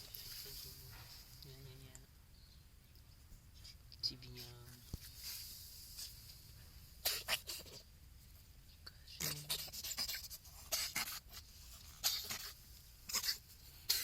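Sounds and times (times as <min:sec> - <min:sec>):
cat sneezing: 0:07.0 - 0:07.8, 0:09.4 - 0:14.0.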